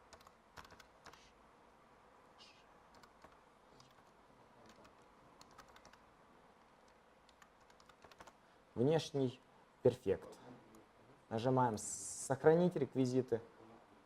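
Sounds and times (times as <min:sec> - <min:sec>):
faint keyboard typing: 0:00.0 - 0:01.4, 0:02.4 - 0:08.5.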